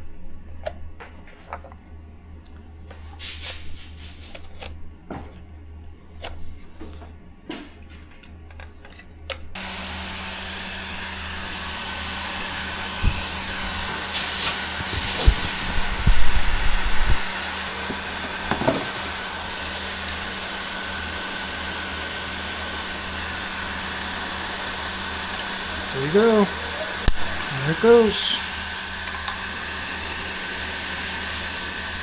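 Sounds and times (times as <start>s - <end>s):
hot air gun blowing: 9.6s - 32.0s.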